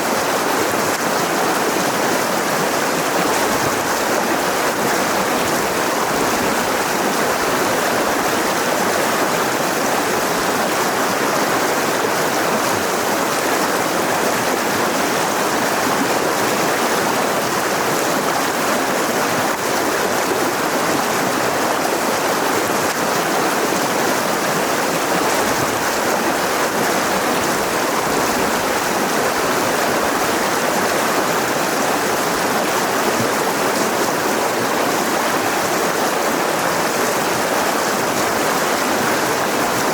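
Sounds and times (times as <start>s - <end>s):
river rushing over rocks: 0.0s - 39.9s.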